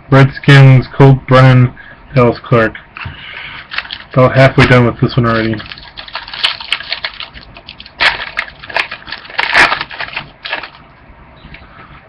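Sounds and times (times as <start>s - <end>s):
trading cards rustling and snapping: 3.6s - 4.2s, 5.3s - 10.8s.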